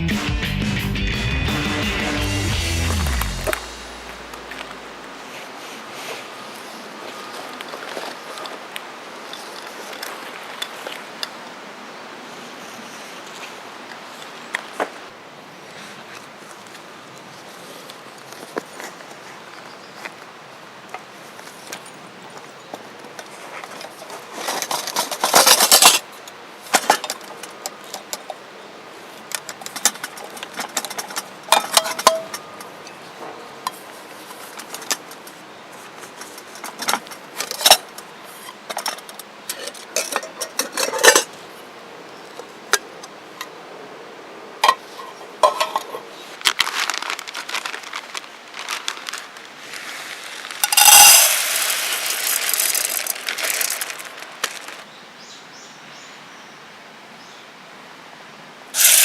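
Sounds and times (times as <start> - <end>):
scraping rustle: 23.2 - 28.1, 44.7 - 54.9
objects clinking and knocking: 24.5 - 26.0, 29.4 - 32.6, 38.7 - 41.3, 45.4 - 45.9, 50.6 - 54.8, 58.8 - 59.0.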